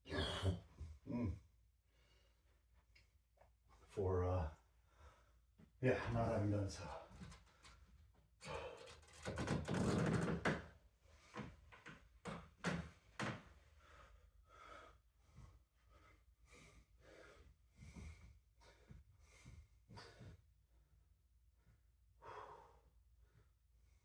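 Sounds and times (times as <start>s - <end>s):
man breathing hard: 13.8s - 20.3s, 22.2s - 23.5s.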